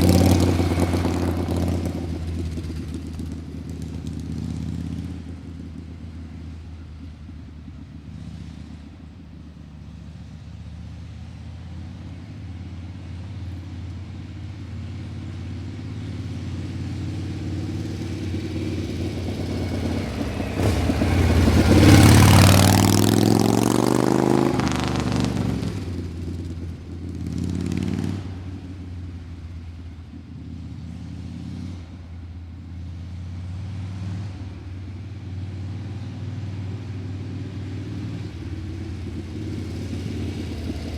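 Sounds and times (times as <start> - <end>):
vehicle passing by: 0.0 - 40.9
low engine drone: 31.8 - 40.9.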